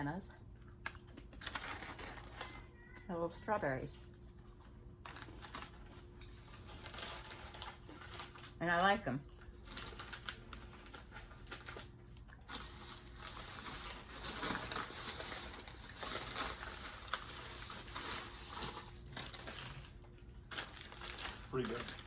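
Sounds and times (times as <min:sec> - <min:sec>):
crunching dried fruit snacks: 0:09.2 - 0:22.0.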